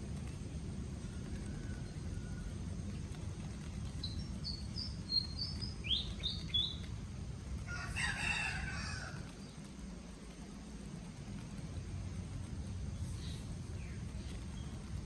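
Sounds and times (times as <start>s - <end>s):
steady low rumble: 0.0s - 15.0s
small bird chirping: 3.4s - 7.0s
rooster crowing: 7.7s - 9.3s.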